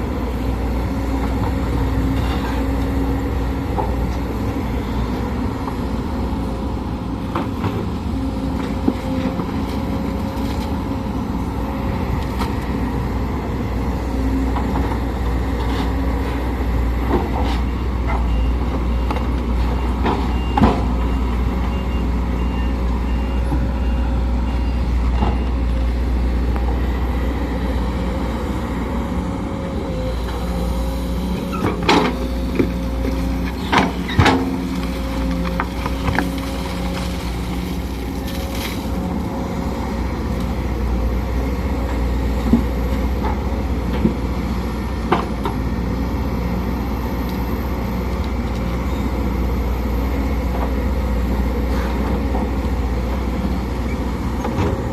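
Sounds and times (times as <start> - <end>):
excavator diesel engine running: 0.0 - 54.9.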